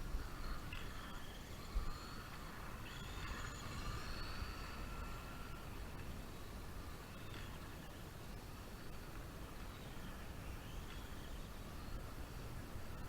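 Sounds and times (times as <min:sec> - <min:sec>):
electric motor whining: 0:00.0 - 0:06.6
wind rumble on microphone: 0:00.0 - 0:13.0.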